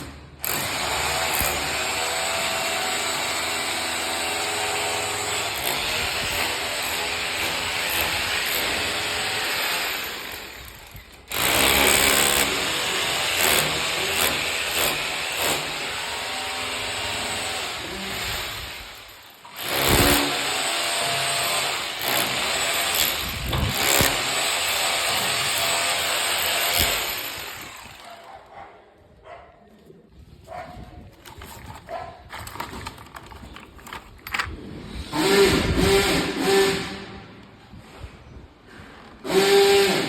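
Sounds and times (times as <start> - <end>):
power tool running: 35.1 - 37.2, 39.2 - 40.0.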